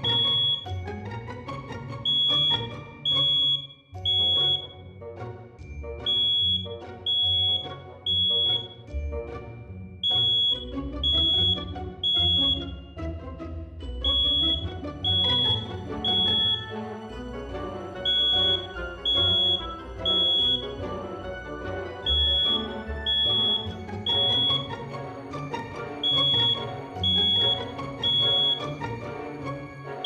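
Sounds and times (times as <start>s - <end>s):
smoke alarm beeping: 0.0s - 0.8s, 2.0s - 4.8s, 6.0s - 8.8s, 10.0s - 13.0s, 14.0s - 16.8s, 17.9s - 29.0s
background music: 0.0s - 30.0s.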